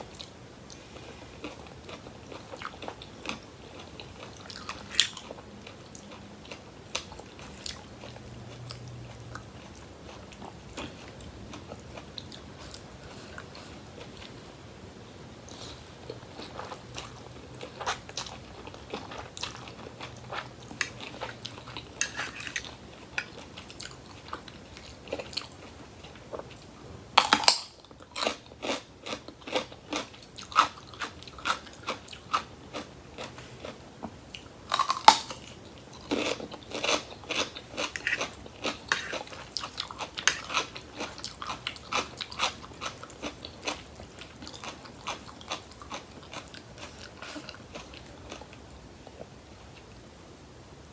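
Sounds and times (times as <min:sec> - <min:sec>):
person crunching vegetables: 0:27.1 - 0:33.8, 0:34.4 - 0:48.6.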